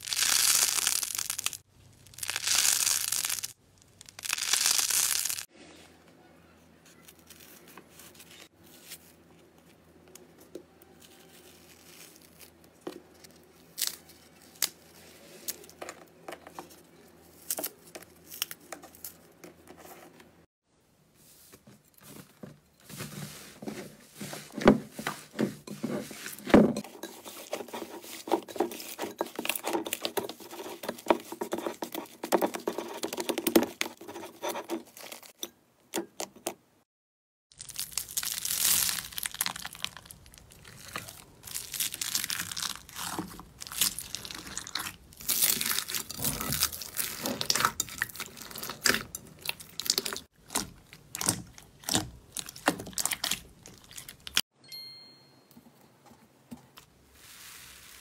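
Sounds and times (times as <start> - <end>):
slime crackling and popping: 0.0 - 5.5, 37.5 - 54.4
slime squishing by hand: 24.2 - 35.2, 37.6 - 54.4.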